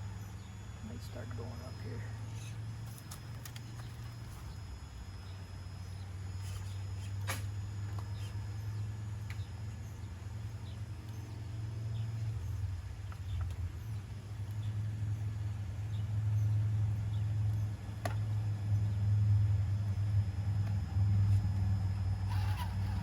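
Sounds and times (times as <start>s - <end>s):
toy car electric motor droning: 20.9s - 23.0s.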